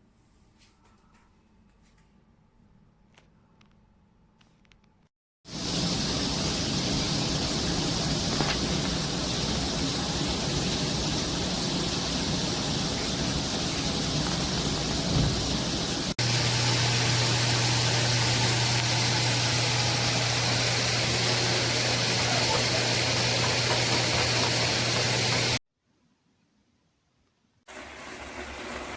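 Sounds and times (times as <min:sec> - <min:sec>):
shower water spraying: 0:05.5 - 0:25.6, 0:27.7 - 0:28.9.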